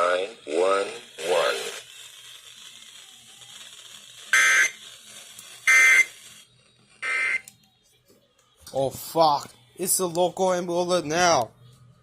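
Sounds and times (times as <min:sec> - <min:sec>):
faint radio static: 0:00.0 - 0:12.0
harsh digital tone bursts: 0:04.2 - 0:04.9, 0:05.6 - 0:06.2.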